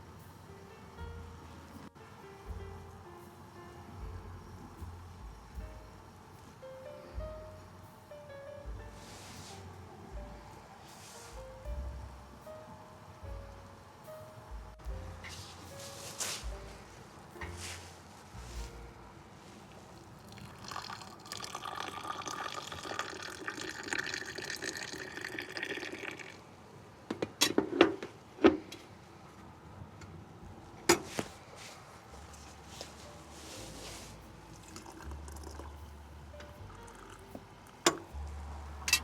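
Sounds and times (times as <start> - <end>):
liquid pouring: 20.0 - 26.5, 34.5 - 35.8, 36.7 - 37.2.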